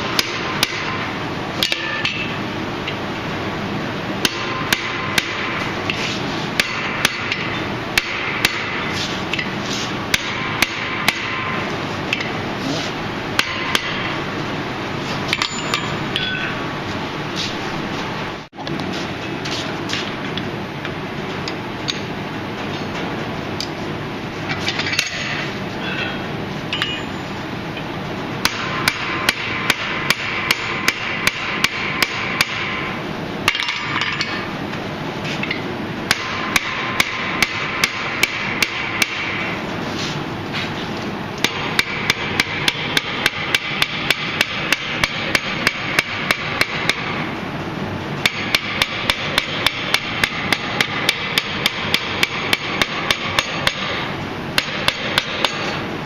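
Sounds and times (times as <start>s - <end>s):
hammer striking steel on anvil: 0.0s - 2.4s, 4.2s - 6.0s, 6.6s - 9.5s, 10.1s - 12.4s, 13.4s - 14.2s, 15.3s - 16.6s, 26.7s - 27.4s, 28.4s - 32.9s, 33.5s - 34.5s, 35.4s - 39.6s, 41.4s - 47.2s, 48.2s - 55.8s
steady background noise: 0.0s - 56.0s.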